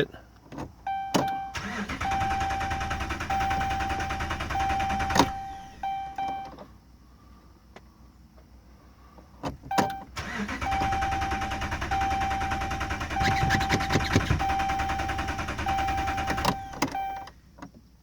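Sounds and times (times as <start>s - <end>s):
repeating high electronic beep: 0.9s - 6.5s, 10.7s - 17.3s
engine cranking on starter: 1.6s - 5.9s, 10.2s - 17.0s.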